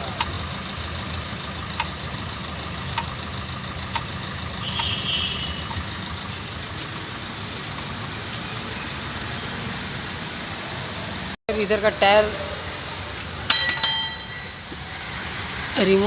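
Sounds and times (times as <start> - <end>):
brake clicks: 0.0 - 8.5
brake squeak: 0.0 - 9.7
car engine idling: 0.0 - 11.4.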